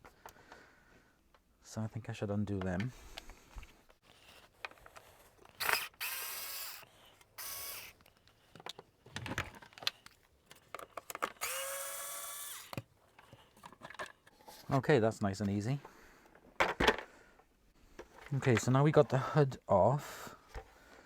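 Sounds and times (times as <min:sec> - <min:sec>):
small clicks and handling noises: 0:02.6 - 0:14.8
power screwdriver running: 0:05.5 - 0:08.1, 0:11.3 - 0:12.8.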